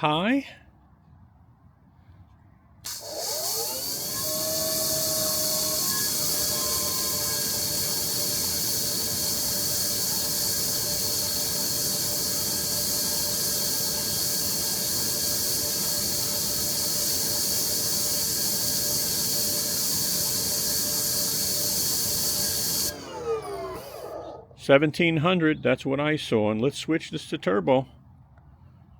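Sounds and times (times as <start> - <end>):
pressure washer water jet hissing: 2.9 - 24.1
electric motor and pump whine: 2.9 - 24.5.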